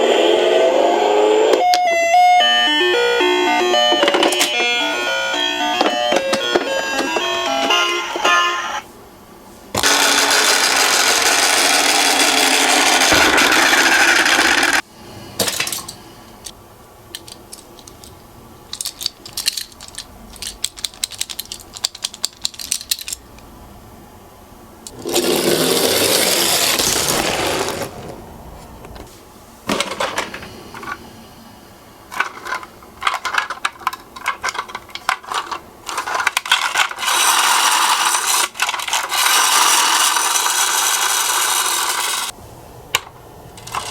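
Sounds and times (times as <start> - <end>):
toy cars rolling rattle: 9.8 - 14.8, 17.2 - 23.2, 24.9 - 28.1, 32.1 - 42.4, 43.6 - 43.9
clicks and clatters: 17.1 - 23.2, 32.1 - 37.4.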